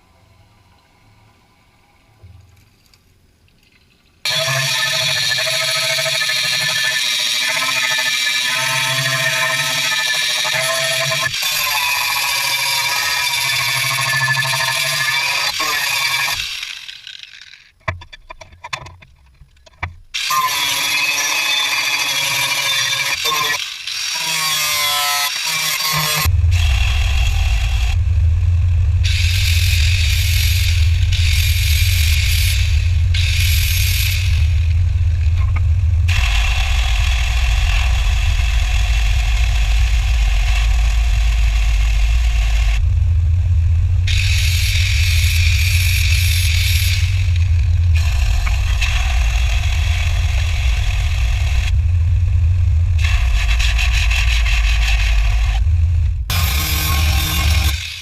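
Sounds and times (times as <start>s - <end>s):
power grinder running: 4.3s - 17.6s, 29.0s - 35.2s, 36.1s - 42.8s, 44.0s - 51.8s, 56.3s - 58.0s
metal piece clicking and knocking: 17.8s - 20.0s
loud steady rumble: 26.2s - 58.0s.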